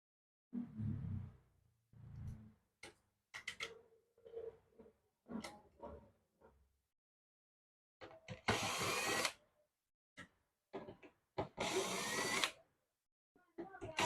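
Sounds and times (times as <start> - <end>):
electric screwdriver whining: 8.5 - 9.3, 11.6 - 12.6.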